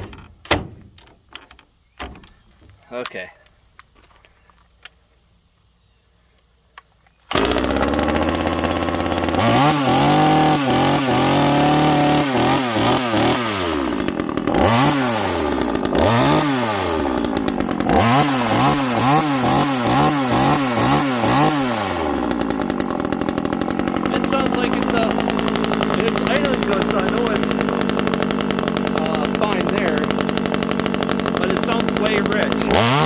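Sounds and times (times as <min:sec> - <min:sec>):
chainsaw engine revving: 0:07.3 - 0:33.0.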